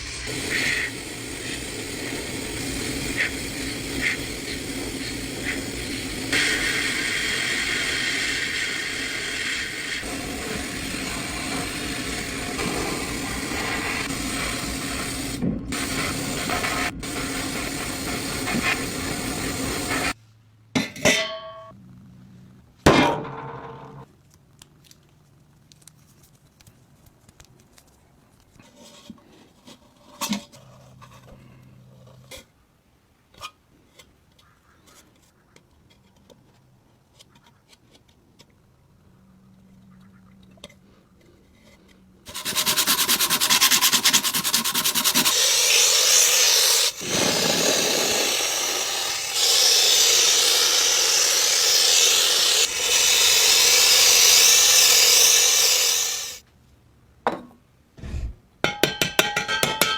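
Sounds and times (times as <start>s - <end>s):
abrasive sanding or grinding: 42.3s - 56.4s.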